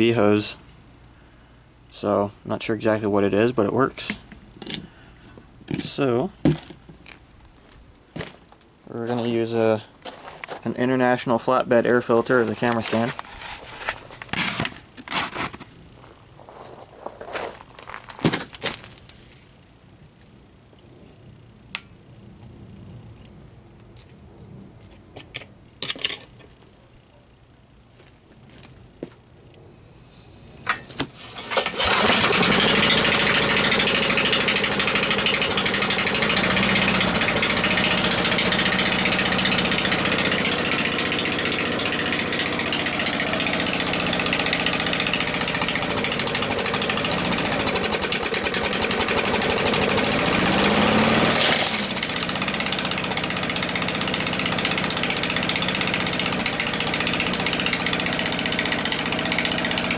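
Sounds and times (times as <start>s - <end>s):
lawn mower engine running: 9.1s - 15.5s, 29.4s - 59.9s
gas hiss: 29.4s - 33.0s.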